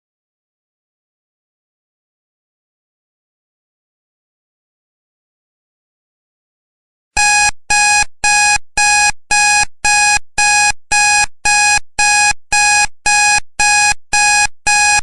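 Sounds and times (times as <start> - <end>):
timer alarm beeping: 7.2 - 15.0.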